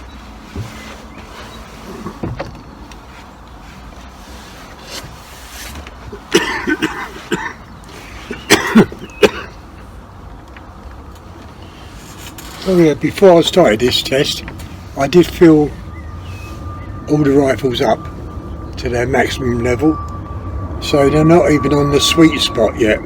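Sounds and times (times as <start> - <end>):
steady low hum: 0.0 - 23.0
sharp knocks and clunks: 2.0 - 2.7.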